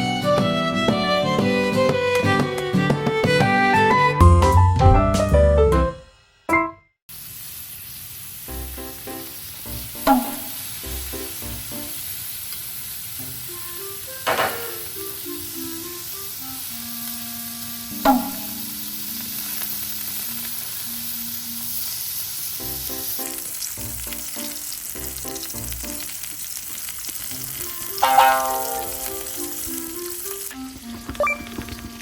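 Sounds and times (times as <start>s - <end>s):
background melodic music: 0.0s - 6.8s, 27.8s - 31.4s
food sizzling in a pan: 7.1s - 32.0s.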